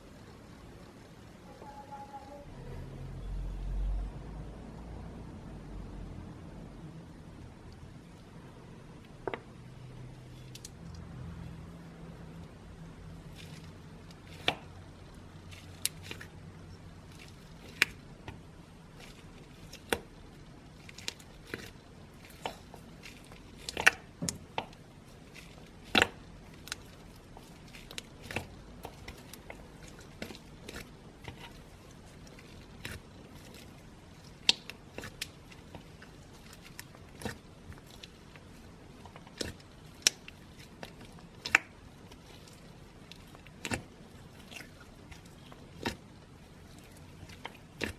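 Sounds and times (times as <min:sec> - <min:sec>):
slime popping and clicking: 0:34.2 - 0:35.8, 0:39.0 - 0:41.8.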